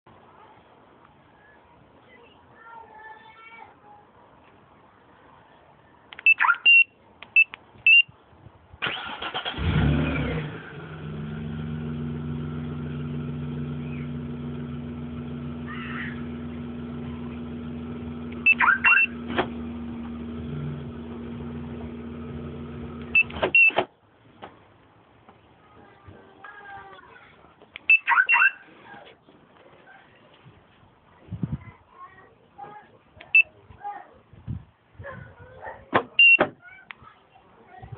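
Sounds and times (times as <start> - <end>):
car alarm chirps: 6.2 - 8.1, 18.4 - 19.3, 27.9 - 28.6
car engine idling: 9.0 - 23.5.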